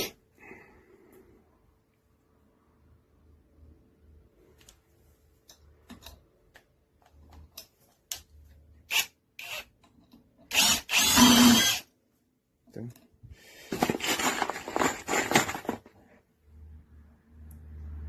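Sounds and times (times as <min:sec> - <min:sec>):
impact driver running: 0:10.5 - 0:11.8.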